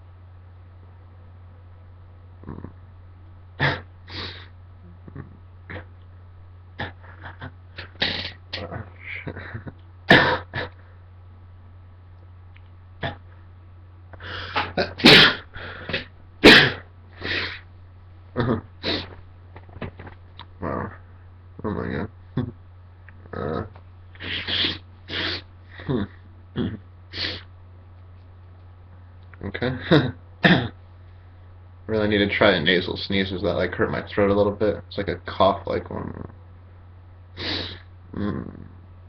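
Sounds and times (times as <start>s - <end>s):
person sneezing loudly: 3.6s - 4.5s, 6.8s - 9.3s, 10.1s - 10.7s, 14.5s - 17.6s, 18.4s - 19.2s, 24.2s - 27.4s
person sniffing: 3.6s - 4.5s, 6.8s - 9.3s, 14.2s - 17.7s, 18.8s - 19.2s, 24.2s - 25.5s, 27.1s - 27.5s, 37.4s - 37.9s.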